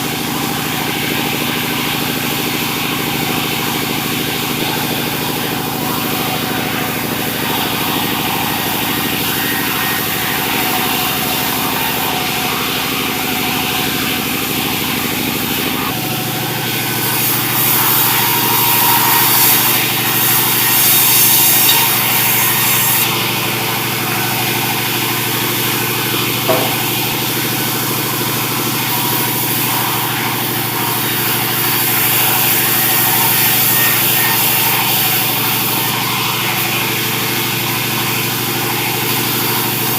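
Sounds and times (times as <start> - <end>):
saw cutting through wood: 0.0 - 39.9
sawmill engine running: 0.0 - 39.9.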